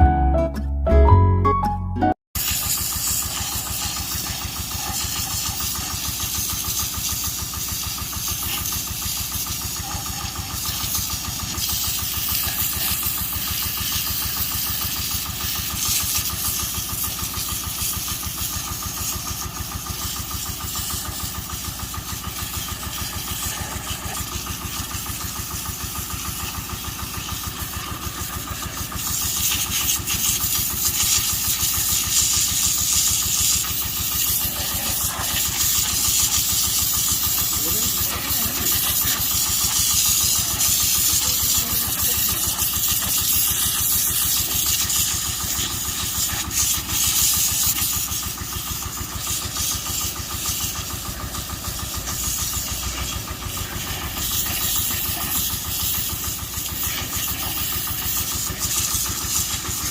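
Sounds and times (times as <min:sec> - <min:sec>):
excavator diesel engine running: 0:00.0 - 0:59.9.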